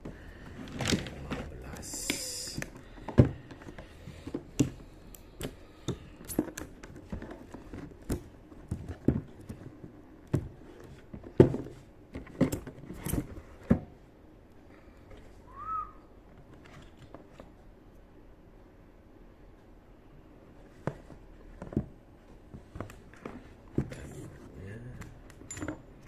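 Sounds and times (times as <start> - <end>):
handling clicks and knocks: 0.0 - 14.0, 20.7 - 26.0.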